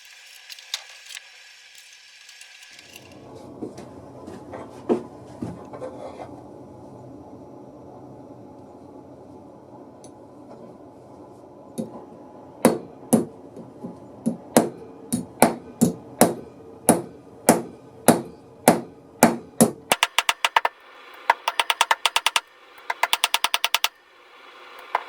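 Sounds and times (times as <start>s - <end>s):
low steady hum: 3.0s - 20.0s
hammer striking wood: 12.6s - 13.3s, 14.3s - 20.7s, 21.3s - 23.9s.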